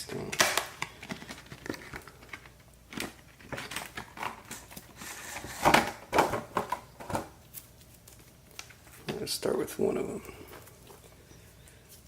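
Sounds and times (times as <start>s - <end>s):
cardboard rustling scrapes: 4.9s - 6.0s.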